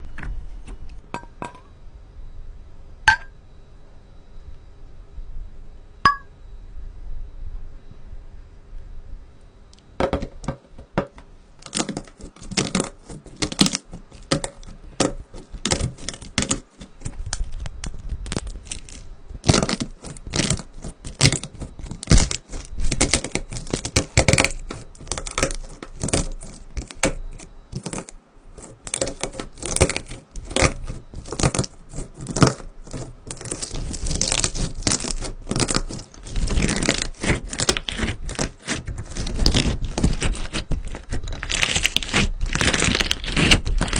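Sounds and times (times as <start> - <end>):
slime crackling and tearing: 11.6 - 43.9.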